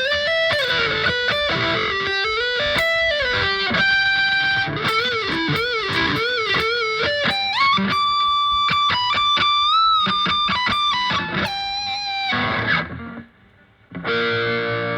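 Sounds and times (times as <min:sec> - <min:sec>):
distorted electric guitar lead: 0:00.0 - 0:13.3, 0:13.9 - 0:14.9.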